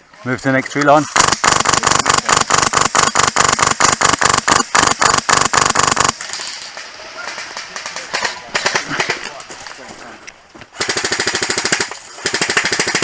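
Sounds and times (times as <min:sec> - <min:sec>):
airsoft rifle firing rapid shots: 0:01.1 - 0:06.2, 0:10.8 - 0:13.0.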